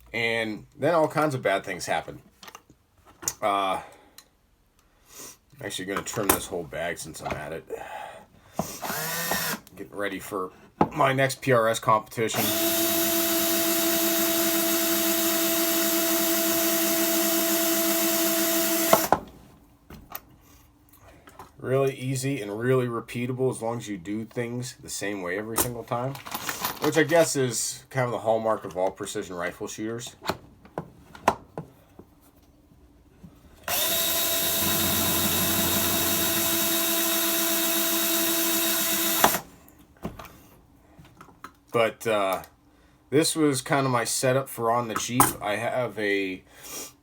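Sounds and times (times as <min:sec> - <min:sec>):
power drill whining: 0:08.8 - 0:09.7, 0:12.3 - 0:19.2, 0:33.7 - 0:39.4.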